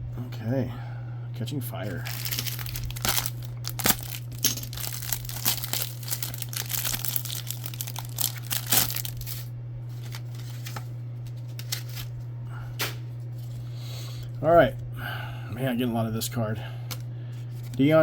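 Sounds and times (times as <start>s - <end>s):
low electrical hum: 0.0s - 18.0s
plastic wrapper crinkling and tearing: 1.9s - 12.2s.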